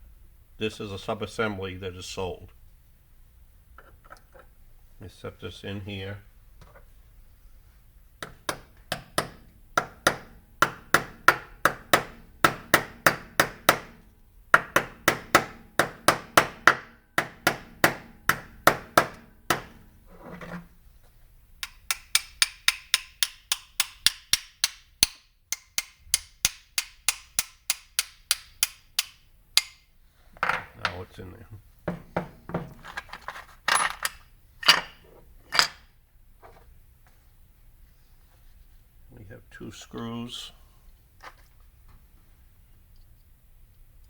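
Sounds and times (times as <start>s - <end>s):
hammer tapping on metal: 8.2s - 14.0s, 14.6s - 19.8s, 21.6s - 29.8s.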